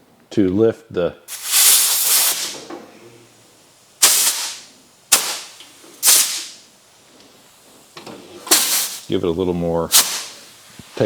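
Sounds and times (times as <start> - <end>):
compressed air hissing: 1.3 - 2.6, 4.0 - 11.0.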